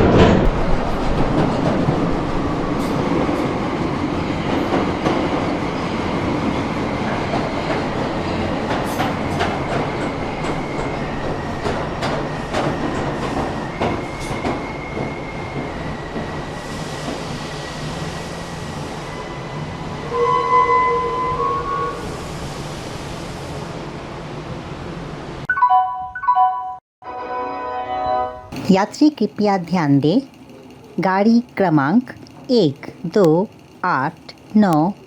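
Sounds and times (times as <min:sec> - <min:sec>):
train wheels clicking on rails: 0:00.0 - 0:19.1, 0:28.5 - 0:35.0.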